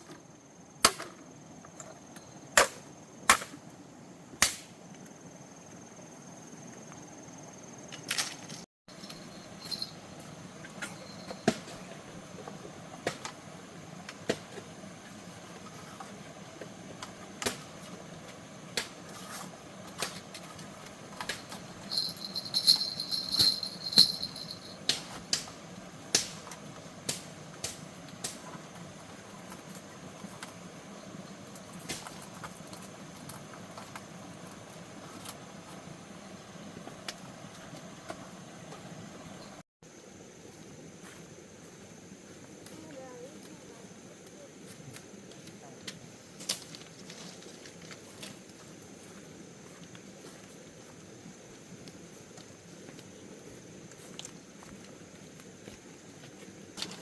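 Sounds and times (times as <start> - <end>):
high ringing sound: 9.0 - 10.0, 21.7 - 24.8.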